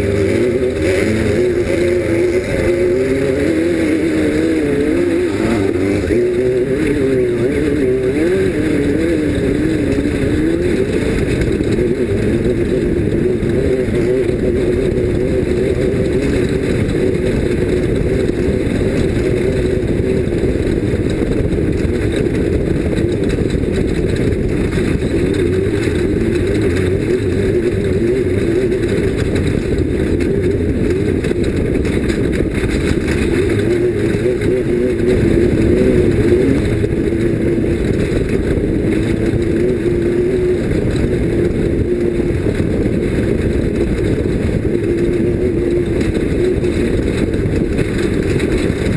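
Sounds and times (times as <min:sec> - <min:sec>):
off-road vehicle engine running hard: 0:00.0 - 0:48.9.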